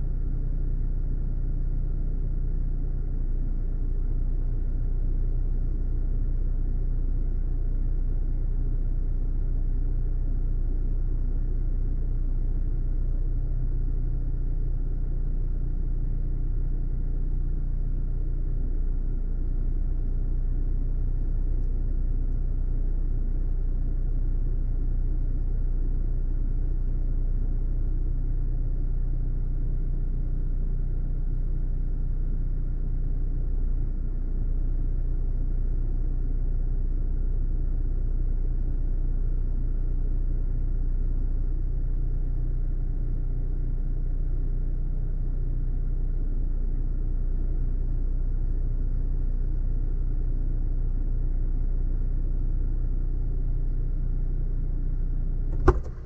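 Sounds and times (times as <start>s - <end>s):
car driving rumble: 55.5s - 56.0s.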